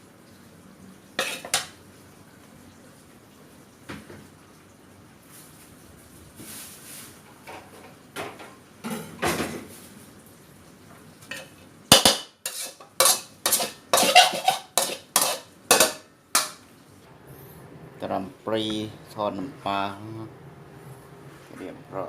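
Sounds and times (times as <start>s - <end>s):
metal utensil scraping a pan: 1.2s - 1.7s, 11.3s - 16.6s
utensil clinking on dishes: 1.2s - 1.7s, 11.3s - 16.6s.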